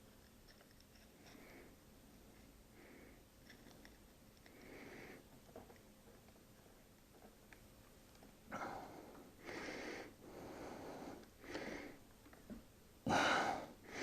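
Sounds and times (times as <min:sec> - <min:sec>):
person breathing and sniffing: 0:01.1 - 0:01.8, 0:04.4 - 0:05.3, 0:08.5 - 0:12.0.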